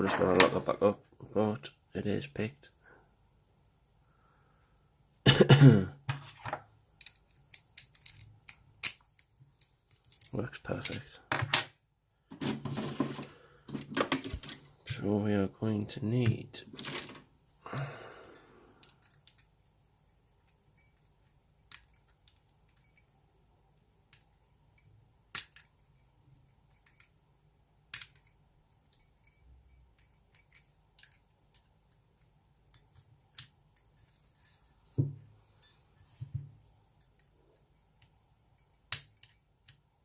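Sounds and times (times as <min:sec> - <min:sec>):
small metallic clicks and clinks: 0:06.8 - 0:11.7, 0:18.3 - 0:27.2, 0:27.9 - 0:40.0.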